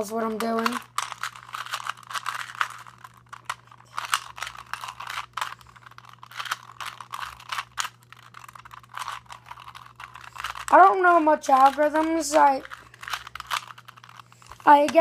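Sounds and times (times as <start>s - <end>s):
plastic puzzle cube clicking: 11.5s - 14.2s.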